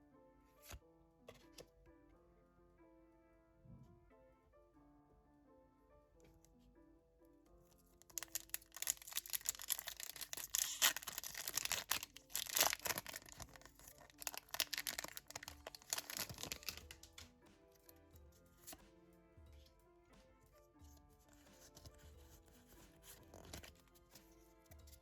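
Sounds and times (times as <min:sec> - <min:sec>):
soft piano music: 0:00.0 - 0:25.0
foil wrapper tearing and crinkling: 0:08.1 - 0:17.2.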